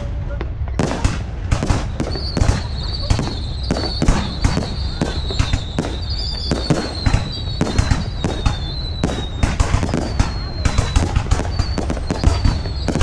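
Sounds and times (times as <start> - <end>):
fireworks sharp bangs: 0.0 - 13.0
low rumble of explosions: 0.0 - 13.0.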